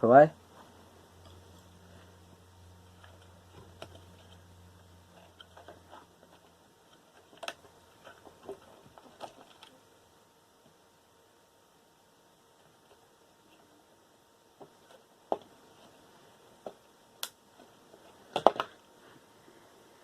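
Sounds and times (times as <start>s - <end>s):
low hum: 0.3s - 14.3s.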